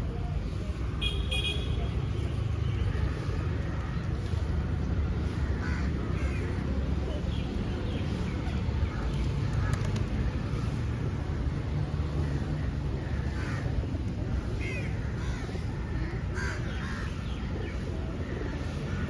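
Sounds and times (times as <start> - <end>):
low rumble of traffic: 0.0 - 19.0
wind: 0.0 - 19.0
crows cawing: 5.4 - 6.6, 13.1 - 13.8, 14.7 - 17.3.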